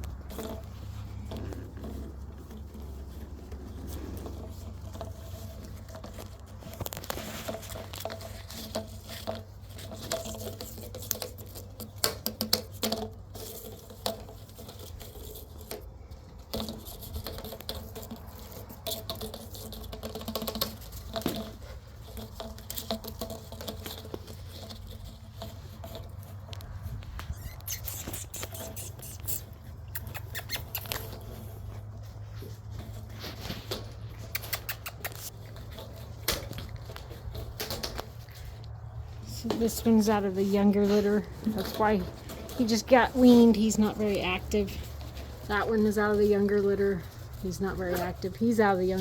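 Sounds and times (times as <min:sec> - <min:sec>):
small squeaks: 0:23.2 - 0:36.3.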